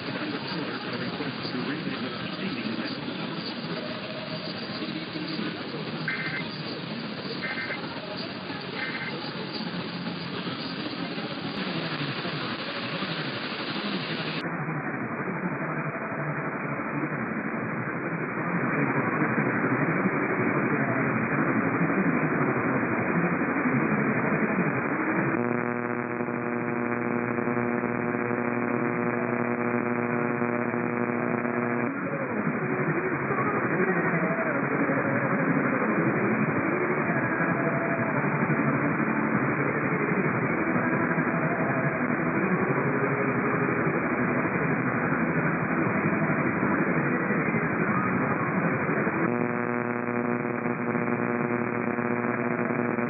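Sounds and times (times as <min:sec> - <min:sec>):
wavering interference: 0:00.0 - 0:14.4, 0:24.4 - 0:53.0
radio static hiss: 0:00.0 - 0:53.0
buzzing hum with overtones: 0:25.3 - 0:33.6, 0:48.4 - 0:53.0.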